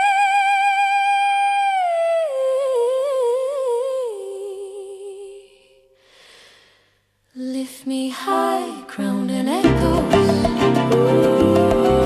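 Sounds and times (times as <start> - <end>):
person singing wordless notes: 7.4 - 12.0.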